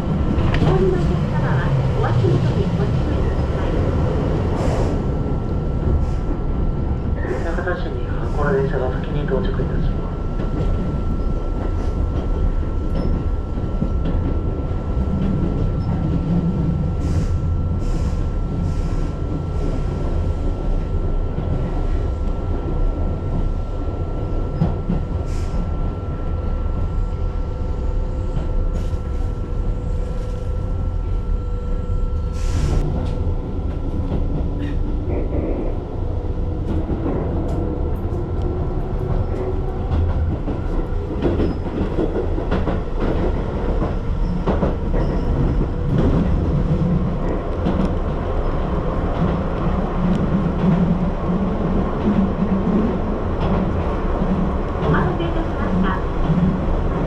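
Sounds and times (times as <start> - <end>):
train wheels rumbling on rail: 0.0 - 57.0
rail clicks: 32.6 - 57.0.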